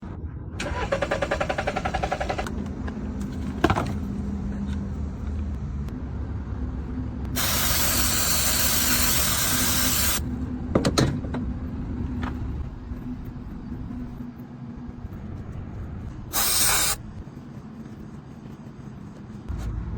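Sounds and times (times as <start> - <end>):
low engine hum: 0.0 - 19.9
car engine cranking: 0.6 - 4.2
loud hiss: 7.4 - 10.2, 16.3 - 17.0.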